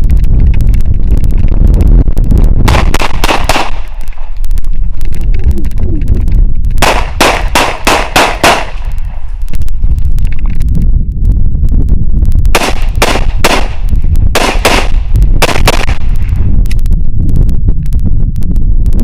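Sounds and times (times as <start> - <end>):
rapid gunfire: 2.7 - 4.0, 6.8 - 8.9, 12.6 - 16.2.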